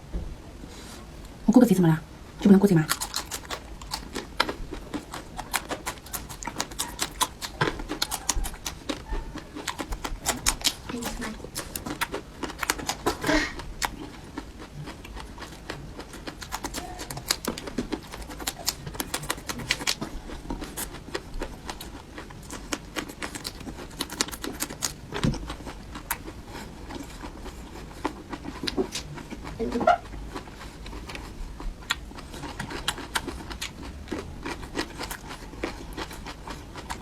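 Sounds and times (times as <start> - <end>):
chewing and smacking: 2.7 - 37.0
sharp crunching clicks: 2.9 - 9.0, 9.6 - 13.2.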